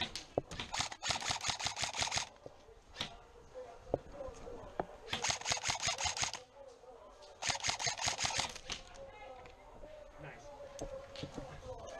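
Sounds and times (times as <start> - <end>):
airsoft rifle firing: 0.0 - 2.4, 5.1 - 6.4, 7.4 - 9.0.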